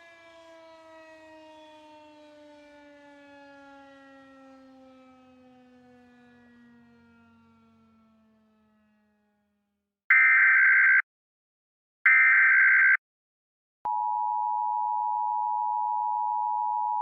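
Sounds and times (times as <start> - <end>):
air-raid siren winding down: 0.0 - 10.5.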